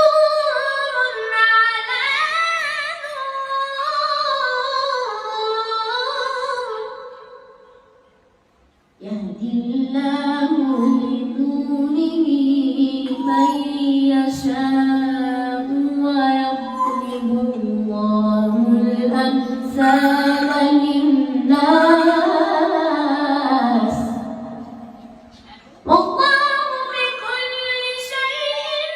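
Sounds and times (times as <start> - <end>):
person reciting melodically: 9.0 - 24.6.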